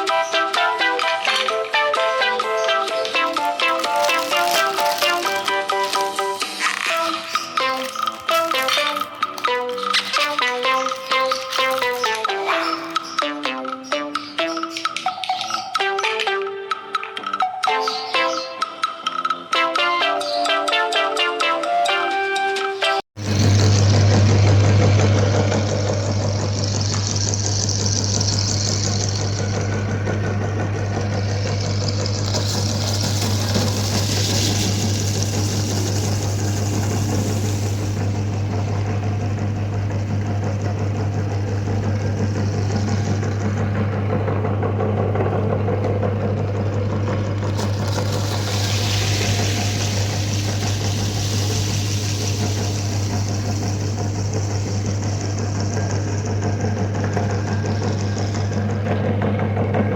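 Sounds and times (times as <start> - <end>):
cookies grinding: 2.7 - 12.8, 31.2 - 38.1, 47.4 - 55.9
electric meat grinder motor hum: 2.8 - 13.2, 23.2 - 59.1.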